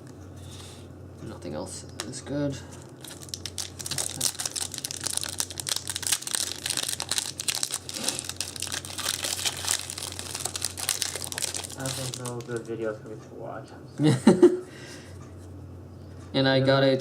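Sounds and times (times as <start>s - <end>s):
foil wrapper crinkling and tearing: 2.8s - 12.7s.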